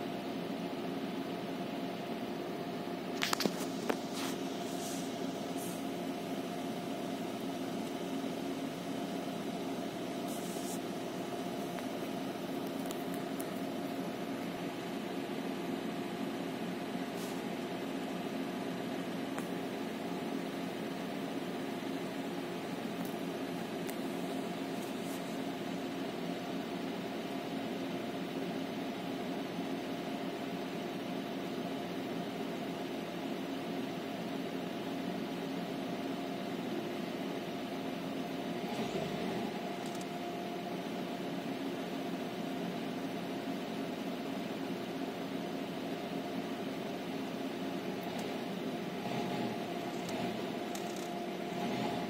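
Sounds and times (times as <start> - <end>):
car air conditioning blower: 0.0 - 52.0
faint short hisses: 17.2 - 17.5
car engine idling: 47.2 - 52.0.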